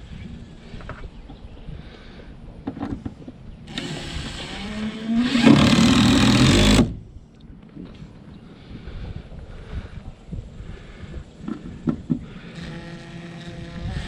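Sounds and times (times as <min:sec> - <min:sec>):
power tool whining: 0:03.7 - 0:07.0, 0:12.4 - 0:14.0.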